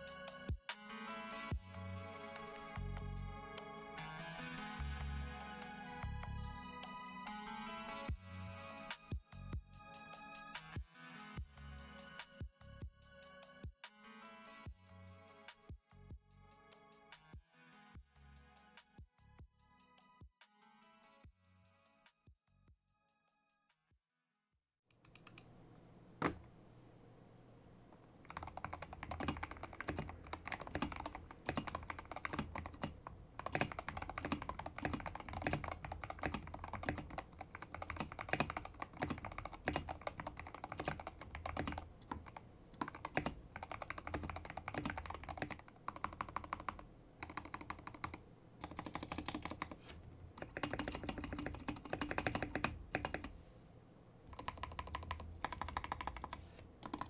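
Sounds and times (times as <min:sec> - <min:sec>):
mechanical keyboard typing: 0:24.9 - 0:27.0, 0:27.7 - 0:53.5, 0:54.2 - 0:57.0.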